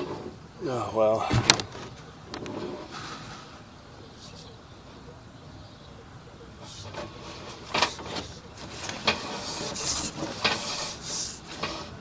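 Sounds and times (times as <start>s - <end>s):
hissing scraping rubs: 0.0s - 4.5s, 6.7s - 12.0s
sharp knocks: 1.2s - 2.5s.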